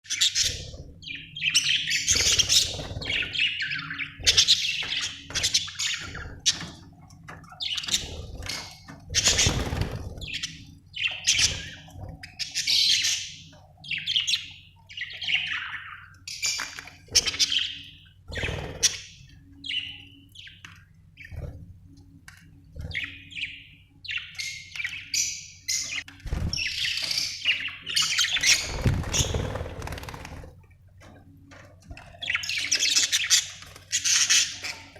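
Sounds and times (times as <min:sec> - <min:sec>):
budgerigars chirping and squawking: 0:00.1 - 0:21.6, 0:22.7 - 0:30.4, 0:31.9 - 0:34.9.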